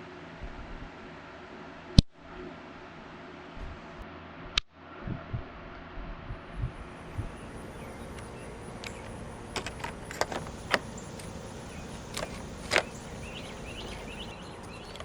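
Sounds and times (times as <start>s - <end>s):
steady low hiss: 6.1s - 15.0s.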